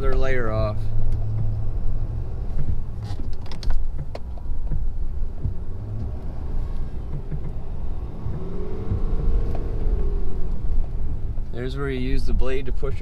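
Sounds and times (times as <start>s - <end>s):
diesel truck engine rumbling: 0.0s - 13.0s
sharp clicks and knocks: 2.4s - 9.8s.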